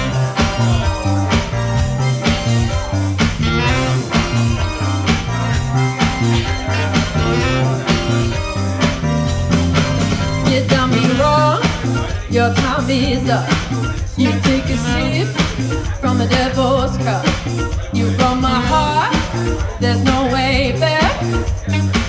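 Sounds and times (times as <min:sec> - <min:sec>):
bass line: 0:00.0 - 0:22.0
instrumental rock music: 0:00.0 - 0:22.0
steady drum beat: 0:00.0 - 0:22.0.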